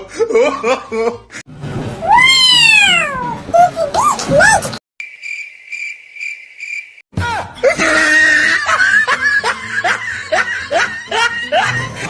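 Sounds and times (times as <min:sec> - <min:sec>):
background music: 0:07.3 - 0:12.0.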